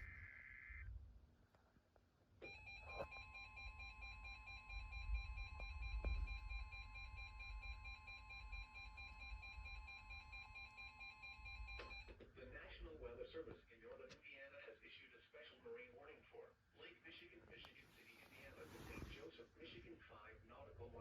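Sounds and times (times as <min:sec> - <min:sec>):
pulsing beep: 0:02.4 - 0:12.1.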